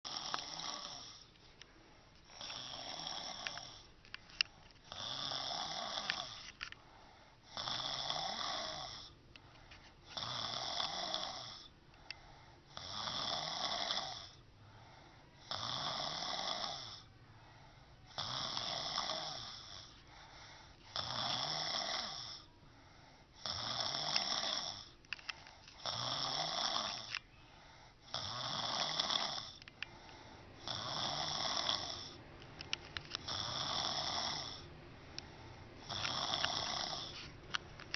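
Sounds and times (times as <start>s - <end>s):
woman snoring: 0.1s - 1.3s, 2.3s - 3.9s, 4.9s - 6.5s, 7.4s - 9.2s, 10.1s - 11.7s, 12.6s - 14.4s, 15.4s - 17.2s, 18.0s - 22.5s, 23.3s - 25.0s, 25.8s - 27.2s, 28.0s - 32.2s, 33.1s - 37.3s.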